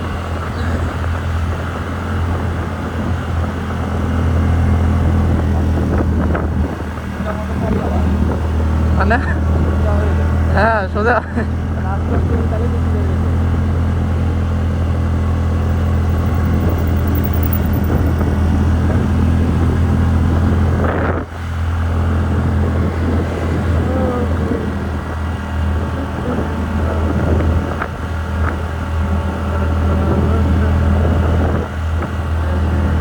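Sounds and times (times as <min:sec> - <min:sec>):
scooter engine running: 0:15.0 - 0:18.8.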